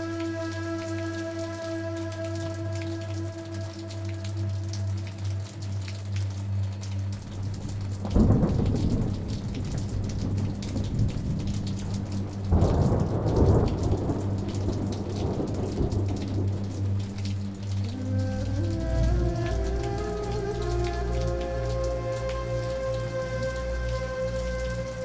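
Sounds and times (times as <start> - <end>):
low steady drone: 0.0 - 25.0
steady rain: 0.0 - 25.0
thunder rolling: 8.1 - 11.5.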